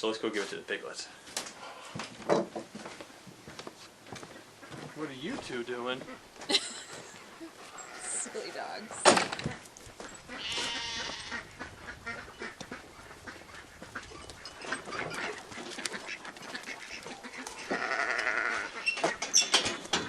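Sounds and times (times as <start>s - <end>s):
farm livestock calling: 4.5s - 20.0s.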